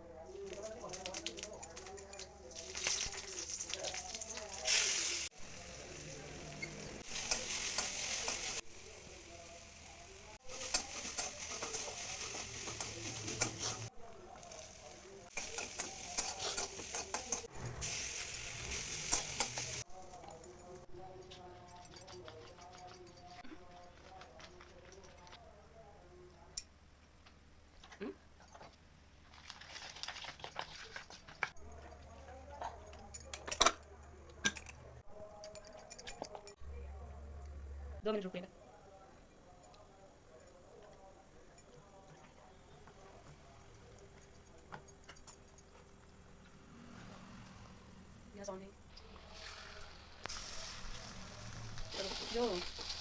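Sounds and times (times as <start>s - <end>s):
food sizzling in hot oil: 2.6s - 19.9s, 49.0s - 53.0s
utensils clinking against dishes: 6.4s - 8.6s, 10.4s - 13.9s, 14.6s - 18.0s, 18.6s - 25.4s, 29.6s - 36.6s, 39.6s - 46.1s.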